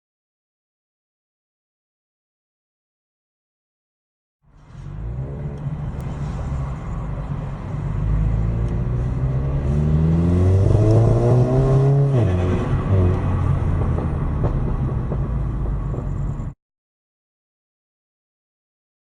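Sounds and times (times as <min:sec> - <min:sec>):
car engine accelerating: 0:04.5 - 0:16.6.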